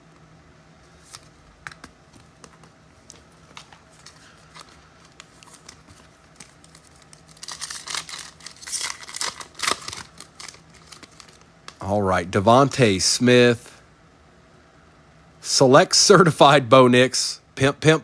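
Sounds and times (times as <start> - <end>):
cards clicking: 1.0 - 11.8
foil wrapper ripped open: 6.6 - 11.4.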